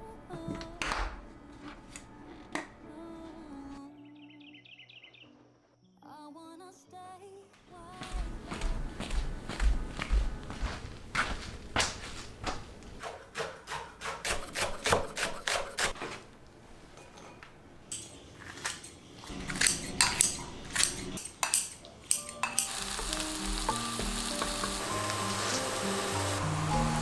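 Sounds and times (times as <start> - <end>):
background music: 0.0 - 10.5, 19.4 - 27.0
kitchenware clinking and tapping: 16.9 - 22.9.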